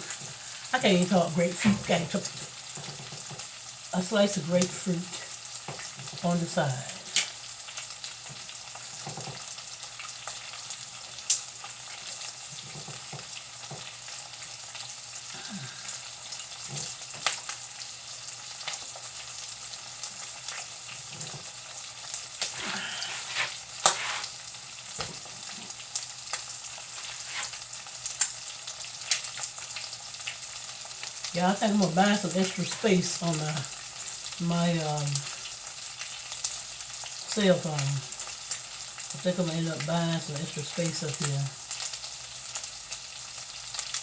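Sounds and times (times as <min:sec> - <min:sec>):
meat sizzling in a pan: 0:00.0 - 0:44.0.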